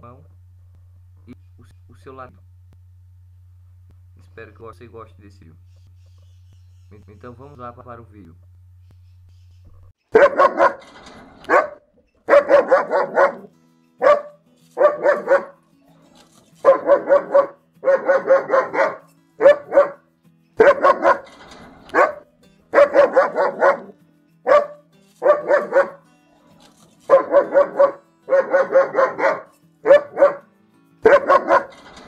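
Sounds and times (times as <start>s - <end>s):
dog barking loudly: 10.1s - 15.6s, 16.6s - 20.0s, 20.6s - 26.0s, 27.1s - 30.4s, 31.0s - 32.0s.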